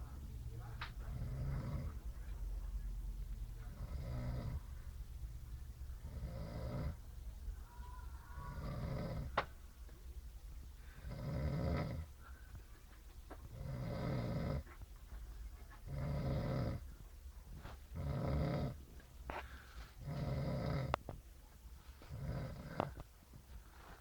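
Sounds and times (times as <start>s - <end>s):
man snoring: 1.0s - 2.0s, 3.7s - 4.6s, 6.0s - 7.0s, 8.4s - 9.4s, 11.0s - 12.1s, 13.5s - 14.6s, 15.9s - 16.8s, 18.0s - 18.8s, 20.0s - 21.0s, 22.1s - 23.0s.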